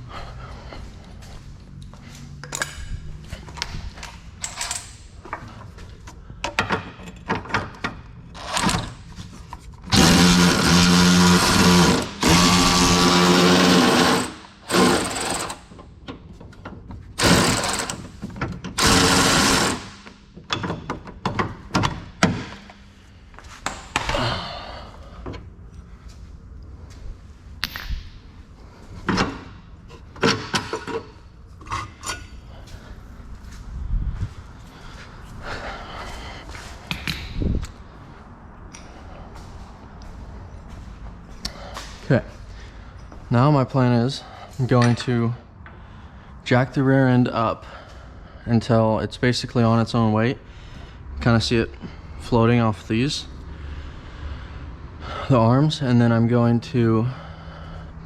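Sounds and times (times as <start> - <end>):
hand tools clicking and clanking: 2.3 - 22.8
power tool running: 9.9 - 15.7, 17.2 - 18.1, 18.8 - 20.1.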